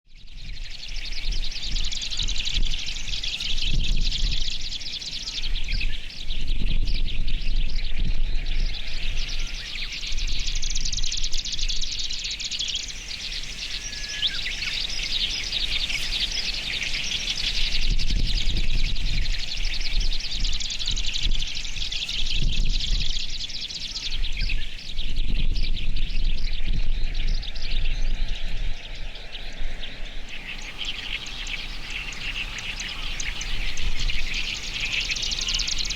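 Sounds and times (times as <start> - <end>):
bird song: 0.1 - 35.9
chorus of birds: 0.1 - 35.9.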